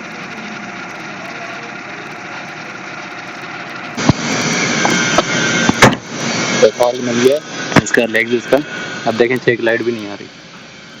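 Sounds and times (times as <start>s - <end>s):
sharp engine knocks: 0.0s - 6.2s
car engine running: 0.0s - 11.0s.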